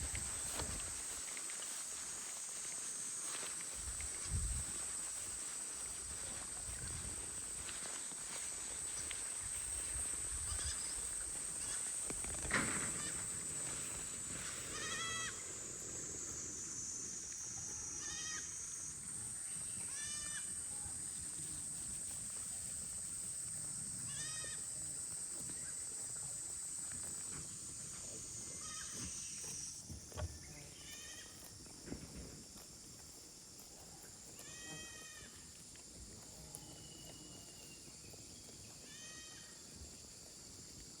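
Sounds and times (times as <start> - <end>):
young goats bleating: 10.3 - 13.5, 14.6 - 15.4, 17.9 - 18.6, 19.6 - 21.0, 24.0 - 24.7, 28.5 - 29.4, 30.6 - 31.4, 34.4 - 35.4, 38.8 - 39.6.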